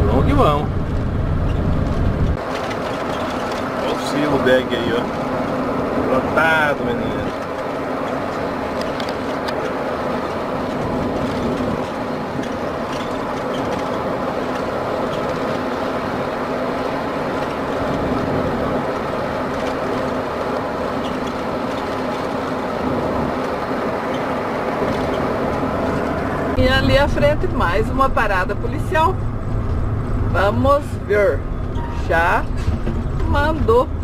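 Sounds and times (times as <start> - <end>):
engine drone: 0.0 - 34.0
road noise: 0.0 - 34.0
small rattles: 7.2 - 26.6.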